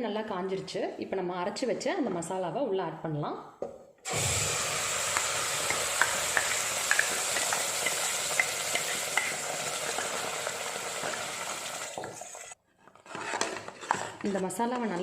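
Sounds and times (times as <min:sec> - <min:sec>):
paste sizzling in hot oil: 0:04.1 - 0:12.6.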